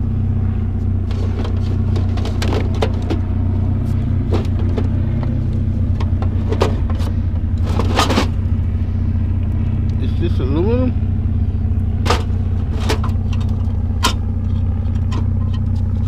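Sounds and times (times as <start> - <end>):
vehicle engine idling: 0.0 - 16.0
sharp clicks and knocks: 1.1 - 3.2, 4.3 - 8.4, 12.0 - 16.0.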